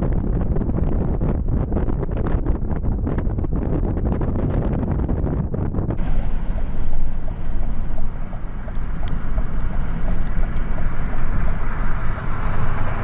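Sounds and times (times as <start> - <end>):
wind buffeting microphone: 0.0 - 13.0
road vehicle noise: 6.0 - 13.0.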